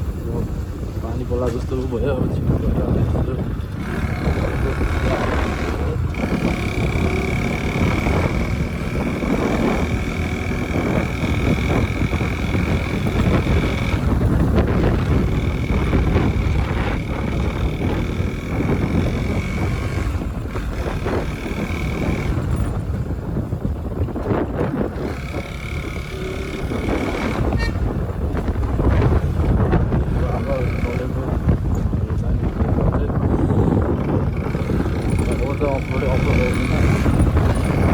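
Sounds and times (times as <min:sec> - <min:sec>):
motorcycle engine rumble: 0:00.0 - 0:37.9
wind rush: 0:00.0 - 0:37.9.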